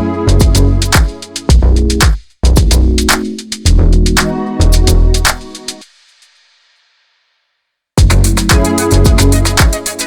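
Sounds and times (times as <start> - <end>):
electronic dance music: 0.0 - 6.2, 8.0 - 10.0
heavy kick drum: 0.3 - 5.4, 8.0 - 9.8.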